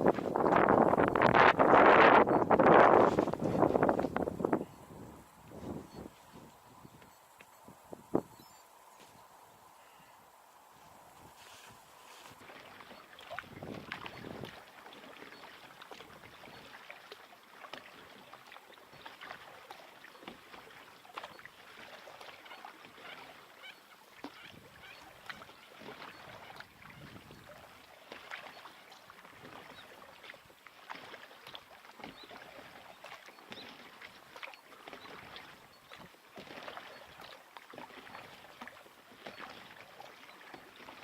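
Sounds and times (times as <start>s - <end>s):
paddle splashing in water: 0.0s - 4.6s, 10.8s - 41.0s.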